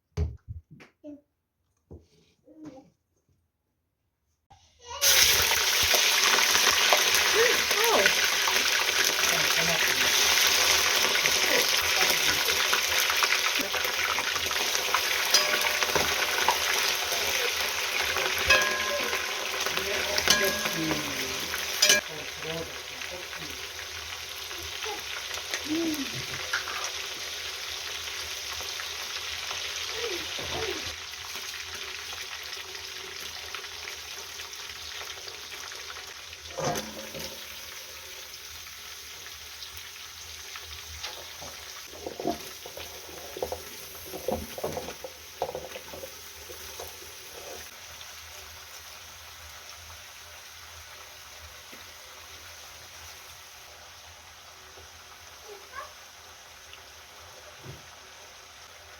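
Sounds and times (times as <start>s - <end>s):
food sizzling in a pot: 4.6s - 58.9s
clinks and knocks: 15.3s - 16.7s, 18.4s - 22.1s, 36.6s - 37.5s.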